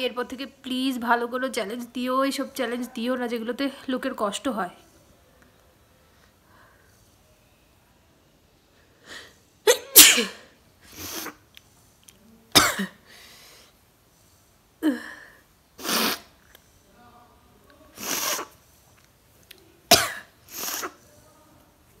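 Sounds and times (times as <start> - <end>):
woman sneezing: 9.7 - 11.4, 15.8 - 16.3, 18.0 - 18.6, 19.9 - 21.0.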